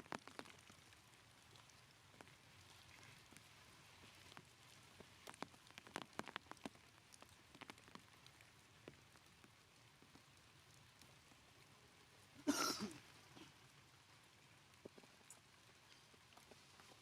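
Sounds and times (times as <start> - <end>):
faint clicks and taps: 0.0 - 10.4, 14.7 - 17.0.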